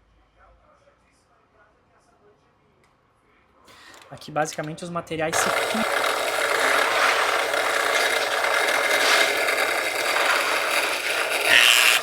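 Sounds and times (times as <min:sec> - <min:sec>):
handheld electric tool whirring: 0:05.3 - 0:12.0.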